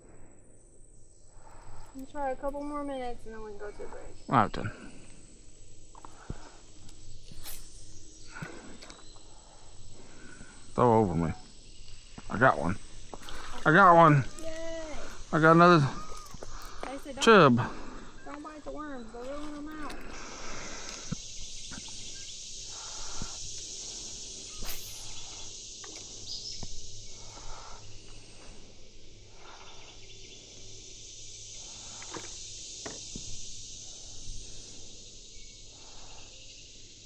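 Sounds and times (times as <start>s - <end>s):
insects chorus: 0.0s - 37.0s.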